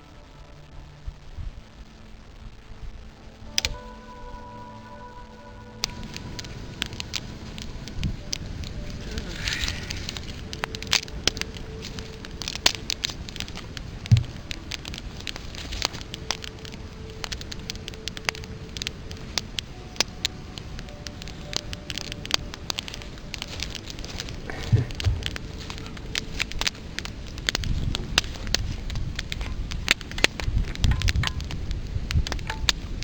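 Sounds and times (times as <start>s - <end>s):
campfire crackling and popping: 0.0s - 33.0s
dull low thump: 24.7s - 25.4s.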